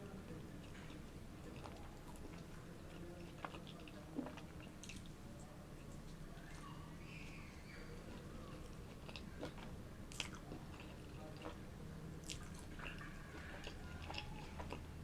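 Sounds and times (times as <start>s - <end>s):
person chewing food: 0.6s - 5.2s, 8.0s - 15.0s.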